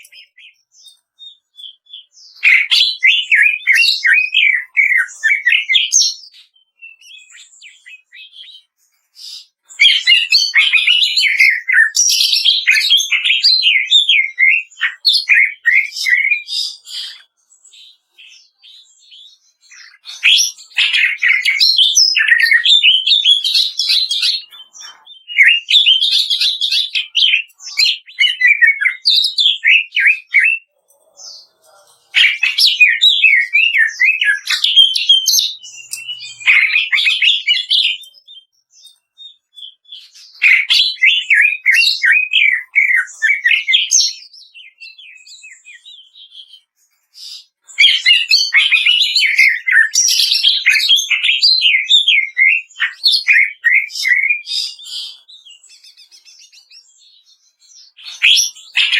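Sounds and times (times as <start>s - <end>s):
bird chattering song: 0.0s - 58.9s.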